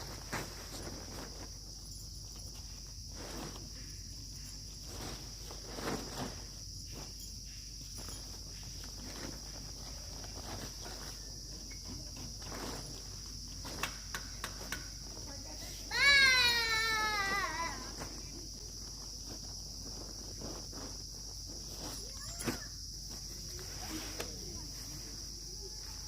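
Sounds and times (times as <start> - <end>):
soft rustles: 0.0 - 16.2, 17.4 - 26.0
insects chorus: 0.0 - 26.0.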